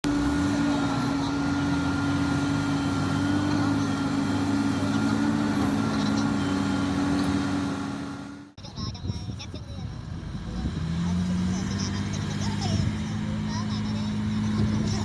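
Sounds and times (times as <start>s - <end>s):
diesel engine droning: 0.0s - 15.0s.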